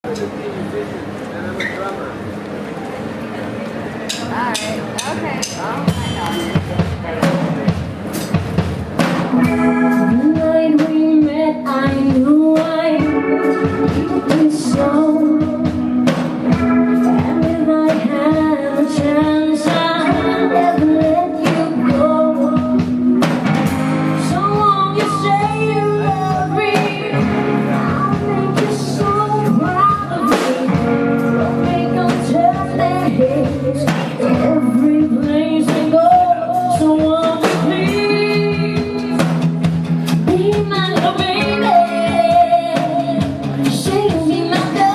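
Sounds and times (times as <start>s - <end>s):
live band playing: 2.6s - 44.9s
lead singer singing: 9.4s - 23.3s, 23.9s - 39.4s, 40.2s - 44.9s.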